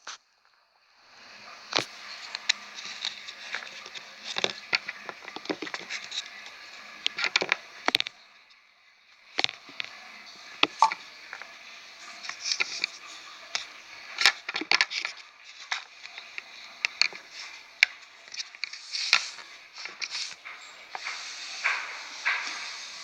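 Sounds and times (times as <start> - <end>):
plastic packaging clicking and crackling: 1.7 - 8.2, 12.2 - 23.0.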